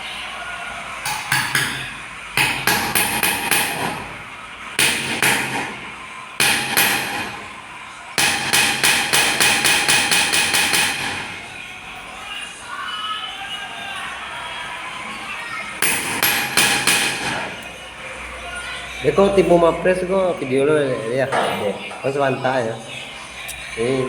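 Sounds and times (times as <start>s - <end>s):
hammer striking metal: 1.0s - 4.2s, 4.8s - 7.6s, 8.2s - 11.5s, 15.8s - 17.7s.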